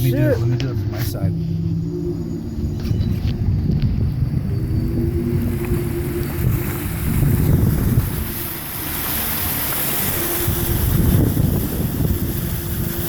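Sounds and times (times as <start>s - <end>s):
vehicle engine running: 0.0s - 13.0s
wind buffeting microphone: 0.0s - 13.0s
floodwater rushing: 4.4s - 13.0s.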